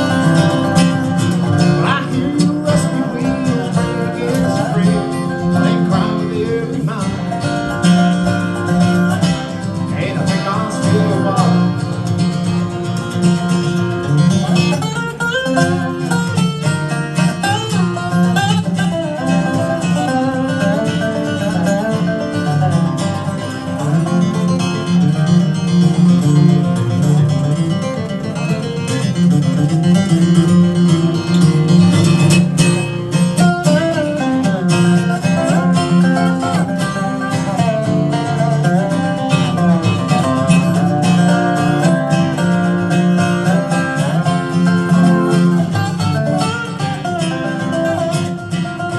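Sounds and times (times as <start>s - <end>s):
acoustic guitar strumming: 0.0s - 48.9s
plucked string melody: 0.0s - 48.9s.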